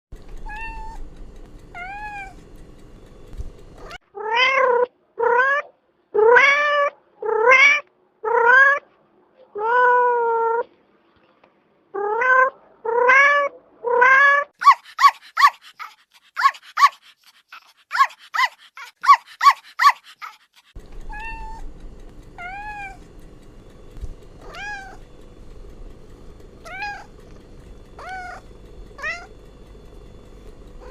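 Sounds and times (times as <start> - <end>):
low hum: 0.1 - 4.0, 20.7 - 30.9
cats meowing: 0.4 - 1.0, 1.7 - 2.4, 3.8 - 8.8, 12.0 - 21.7, 22.4 - 23.0, 24.4 - 25.1, 26.6 - 27.2, 28.0 - 28.4, 29.0 - 29.3.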